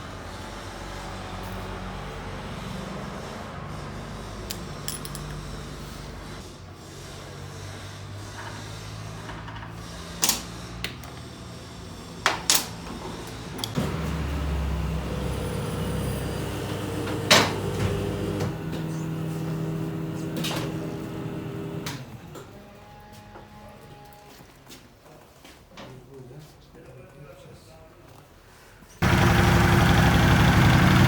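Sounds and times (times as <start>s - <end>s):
metal tools knocking and clanking: 4.8s - 5.4s.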